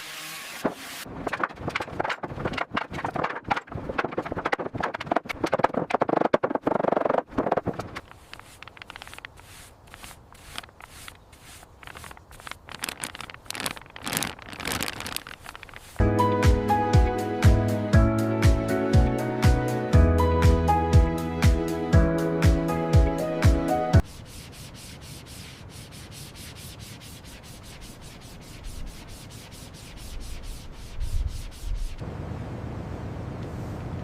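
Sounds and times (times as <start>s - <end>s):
scraping and clicking noises: 1.1s - 16.0s
music: 16.0s - 24.0s.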